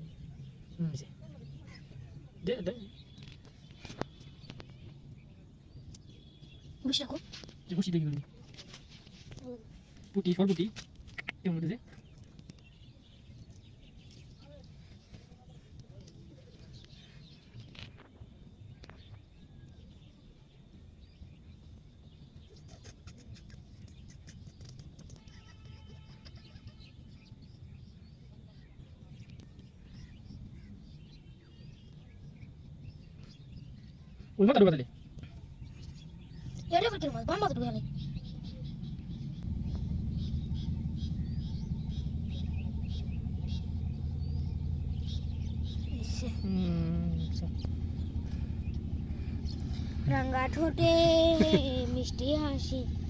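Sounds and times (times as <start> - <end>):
low rumble: 25.8 - 53.0.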